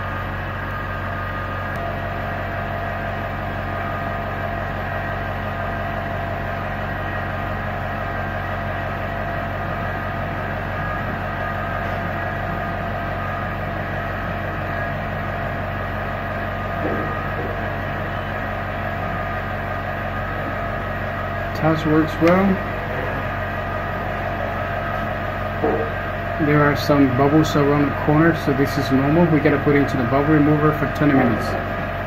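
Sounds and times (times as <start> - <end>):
workshop machinery hum: 0.0 - 32.0
small knock: 25.6 - 25.9.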